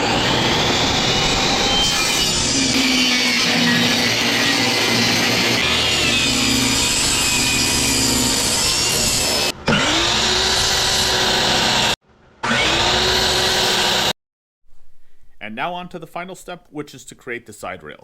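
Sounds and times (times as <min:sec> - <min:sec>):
power tool cutting wood: 0:00.0 - 0:14.2.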